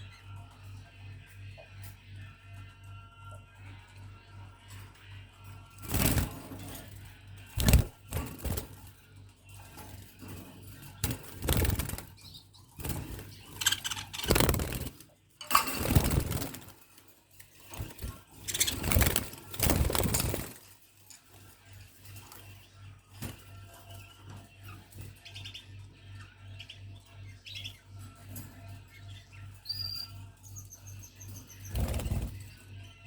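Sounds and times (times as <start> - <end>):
wings flapping: 5.8 - 9.0, 9.6 - 20.8, 31.6 - 32.6.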